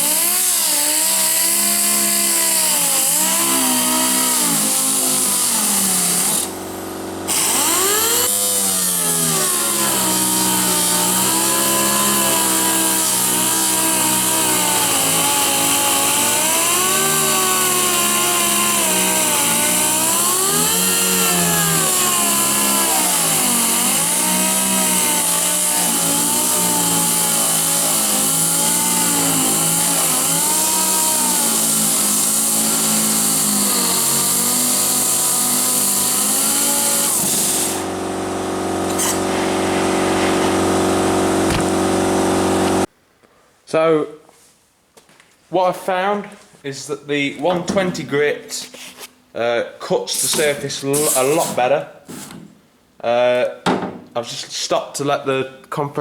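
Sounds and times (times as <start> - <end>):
air sander on metal: 0.0 - 42.9, 50.2 - 52.4.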